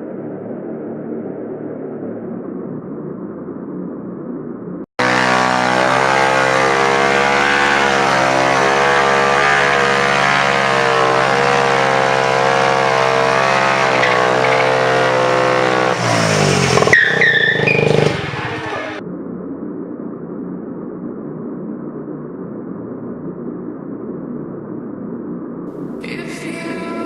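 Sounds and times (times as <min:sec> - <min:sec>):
car engine revving: 0:05.0 - 0:19.0
high-pitched squeals: 0:05.0 - 0:19.0.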